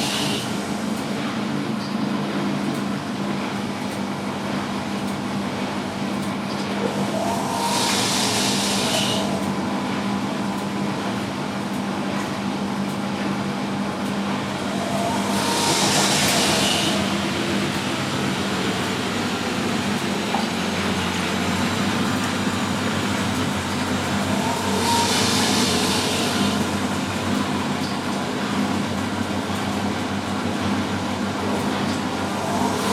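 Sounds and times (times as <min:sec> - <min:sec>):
washing machines spinning: 0:00.0 - 0:32.9
hissing bursts: 0:14.6 - 0:18.1.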